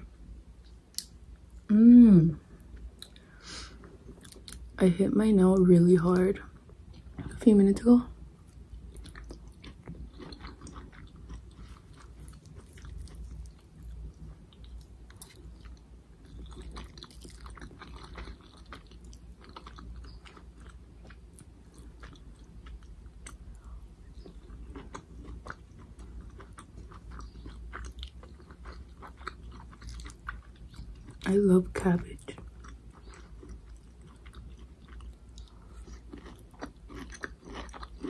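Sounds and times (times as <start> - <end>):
low steady hum: 0.0 - 38.0
chewing noodles: 8.4 - 31.3, 32.2 - 38.0.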